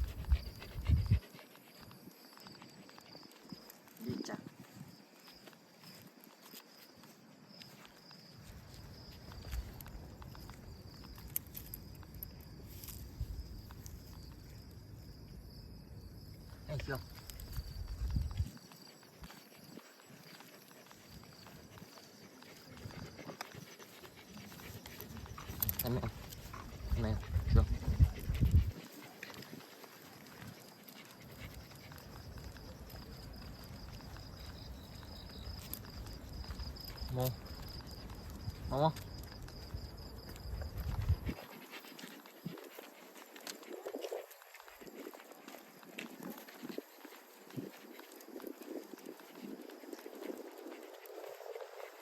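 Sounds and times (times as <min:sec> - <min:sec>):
high insect trill: 0:00.0 - 0:52.0
light ticking steps: 0:00.0 - 0:52.0
dog walking: 0:17.0 - 0:52.0
footsteps: 0:17.1 - 0:52.0.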